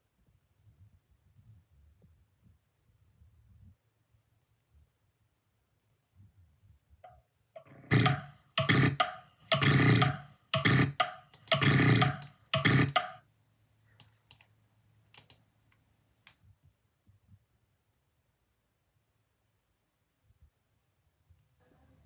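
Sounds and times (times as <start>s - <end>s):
faint clicks: 13.9s - 16.4s.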